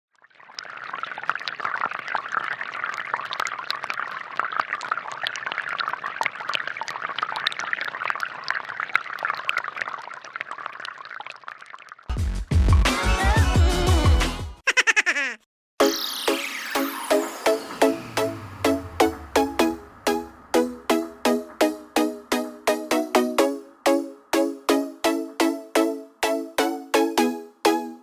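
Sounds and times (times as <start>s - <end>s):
fountain water trickling and splashing: 0.2s - 12.1s
music: 12.1s - 14.6s, 15.8s - 28.0s.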